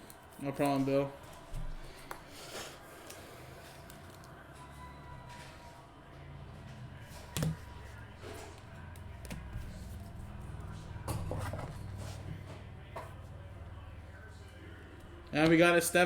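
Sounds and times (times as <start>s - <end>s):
cards rustling: 7.0s - 12.0s
cards clicking and tapping: 7.2s - 11.5s.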